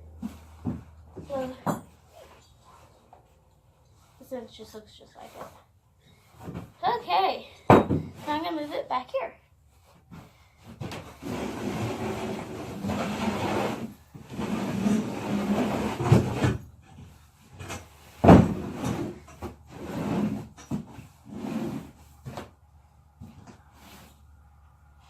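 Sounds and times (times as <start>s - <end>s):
saddle scraping across wood: 9.8s - 22.5s, 23.2s - 24.4s.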